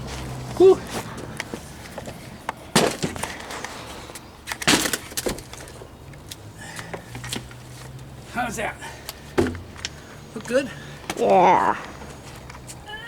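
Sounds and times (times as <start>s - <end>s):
wooden planks knocking and clattering: 2.0s - 3.7s, 4.5s - 5.8s, 9.4s - 10.0s.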